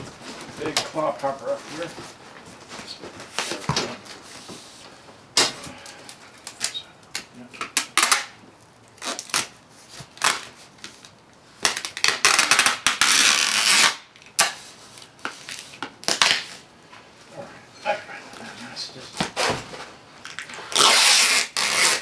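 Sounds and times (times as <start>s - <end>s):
packing tape ripping off roll: 5.4s - 16.7s, 19.2s - 22.0s.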